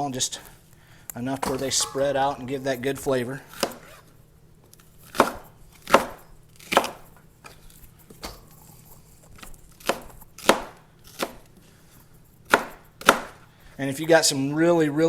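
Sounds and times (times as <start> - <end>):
knife chopping on cutting board: 3.5 - 3.9, 5.1 - 7.1, 9.8 - 11.4, 12.5 - 13.4.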